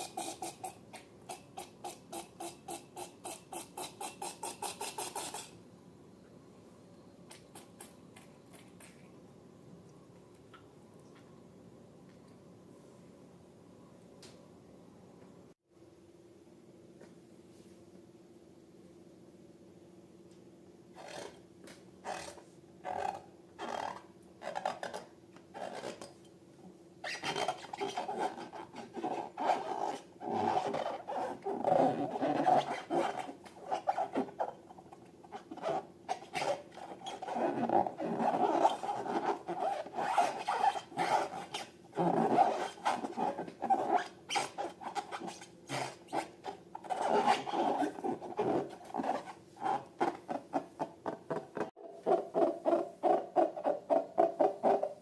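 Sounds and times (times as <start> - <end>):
balloons squeaking when rubbed: 0.0 - 0.8, 1.6 - 5.5, 27.0 - 55.0.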